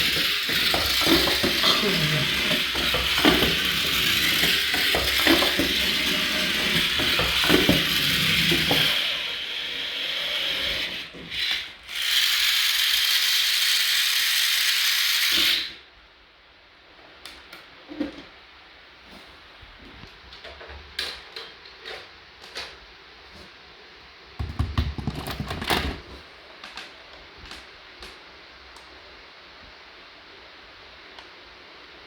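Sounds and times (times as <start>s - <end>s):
toy motor ratcheting whir: 0.0s - 15.8s.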